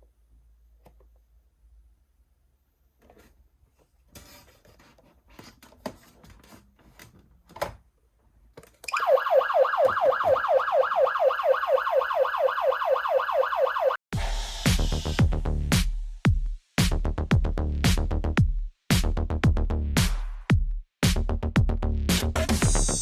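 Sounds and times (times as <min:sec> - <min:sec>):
fast sweeping siren: 0:08.9 - 0:14.0.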